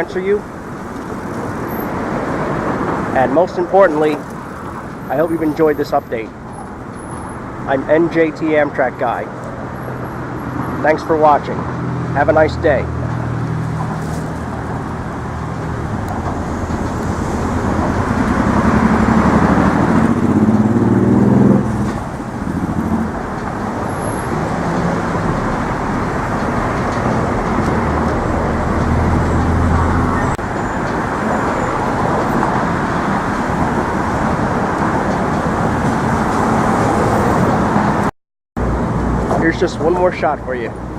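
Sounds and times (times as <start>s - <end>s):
road traffic passing: 0.0s - 40.9s
vehicle engine revving: 11.8s - 30.4s.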